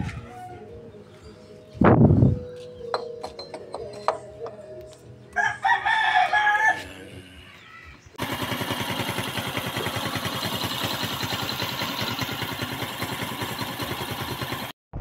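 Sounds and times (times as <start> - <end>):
rooster crowing: 0.0 - 0.8, 5.4 - 7.1
motorcycle engine idling: 8.2 - 14.7.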